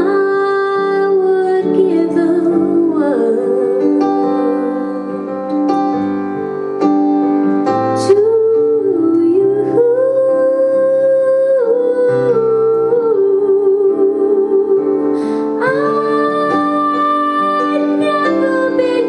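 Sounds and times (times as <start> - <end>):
woman singing a slow ballad: 0.0 - 5.6, 8.0 - 19.0
piano chords: 0.0 - 19.0.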